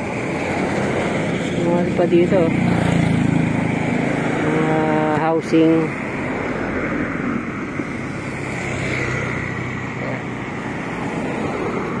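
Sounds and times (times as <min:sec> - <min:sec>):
road traffic with engine hum: 0:00.0 - 0:12.0.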